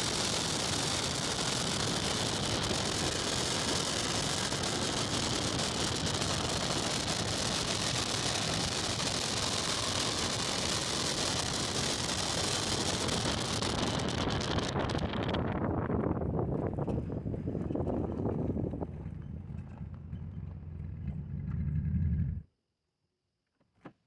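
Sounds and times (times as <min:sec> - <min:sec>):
car engine rushing hiss: 0:00.0 - 0:15.3.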